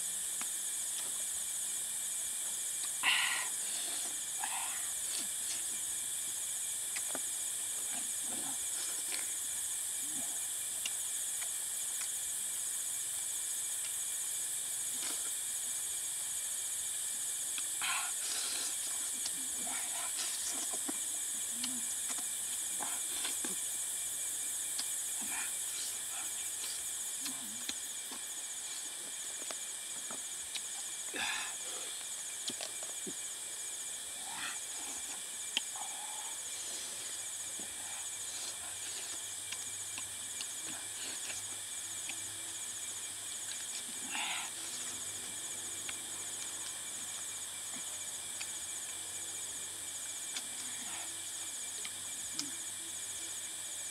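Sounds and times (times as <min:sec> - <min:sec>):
insects chorus: 0:00.0 - 0:53.9.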